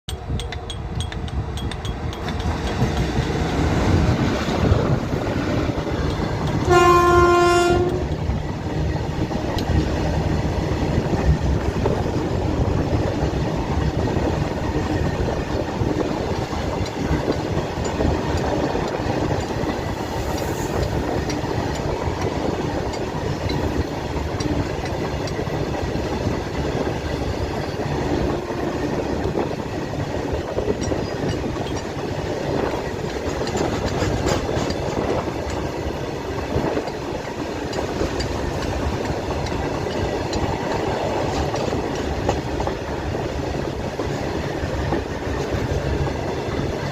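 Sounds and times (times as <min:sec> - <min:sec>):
train rumbling on track: 0:00.0 - 0:46.9
train horn blast: 0:06.6 - 0:08.2, 0:28.3 - 0:28.8.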